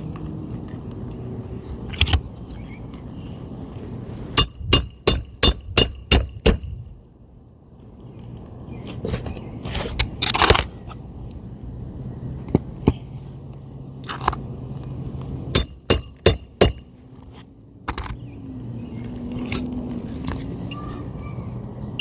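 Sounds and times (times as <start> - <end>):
hammer striking nail: 4.4 - 6.7, 15.6 - 16.9.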